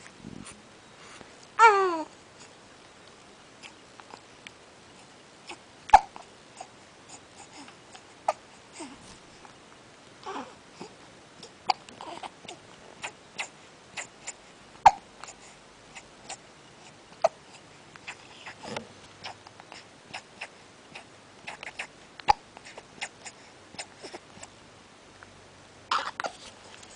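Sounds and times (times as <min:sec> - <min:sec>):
baby cooing: 0:01.6 - 0:02.2, 0:10.2 - 0:10.6, 0:11.4 - 0:15.0, 0:25.9 - 0:26.4
baby hiccupping: 0:05.5 - 0:06.3, 0:11.4 - 0:15.4, 0:18.0 - 0:24.2, 0:25.9 - 0:26.4.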